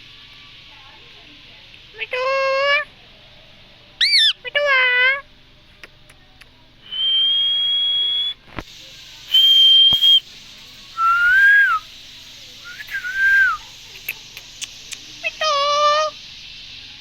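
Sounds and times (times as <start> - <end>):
parrot whistling: 4.0 - 4.4, 6.8 - 8.4, 9.3 - 10.2, 11.0 - 11.9, 12.6 - 13.6
faint clicks: 14.0 - 15.2.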